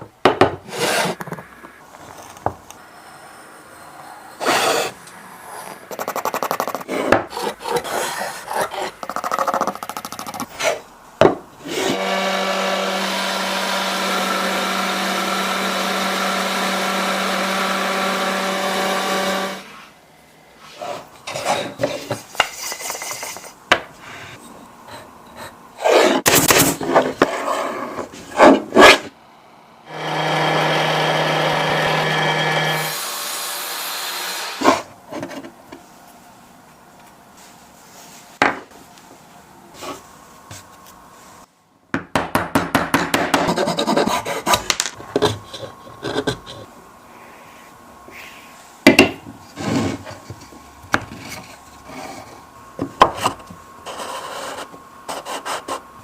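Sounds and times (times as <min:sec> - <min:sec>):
rasping strokes on wood: 0:05.9 - 0:09.0.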